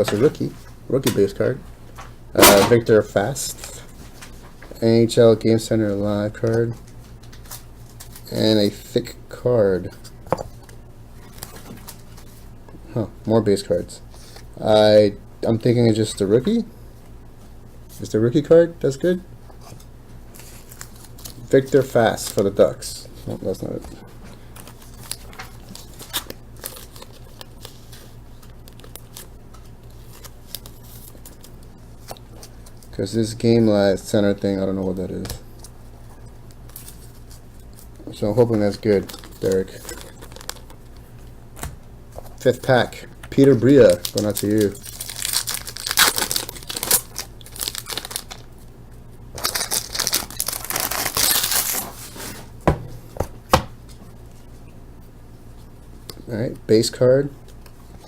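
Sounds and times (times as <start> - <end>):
foil wrapper tearing and crinkling: 20.4 - 22.5, 24.6 - 31.6, 38.1 - 40.8, 42.4 - 48.5, 49.3 - 52.1.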